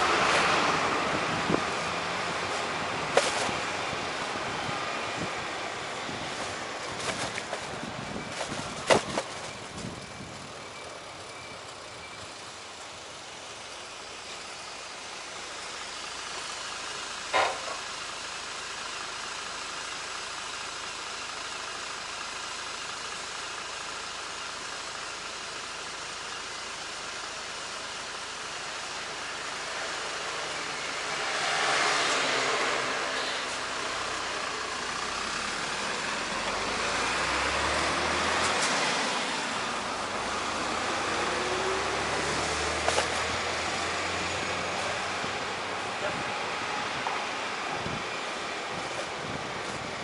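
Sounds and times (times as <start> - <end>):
street traffic noise: 0.0 - 50.0
vehicle passing: 31.2 - 47.4.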